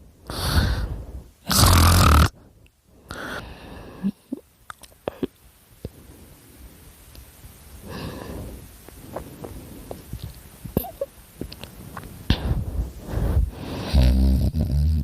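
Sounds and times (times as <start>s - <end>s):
dog breathing and snoring: 13.6s - 15.0s.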